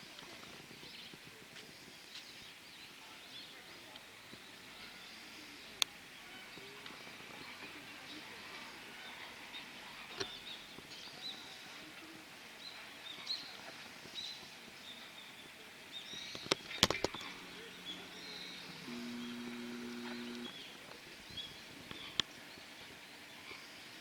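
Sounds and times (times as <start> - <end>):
small birds chirping: 0.0 - 24.0
sharp clicks: 16.3 - 17.4, 18.8 - 20.6
low steady hum: 17.2 - 20.6.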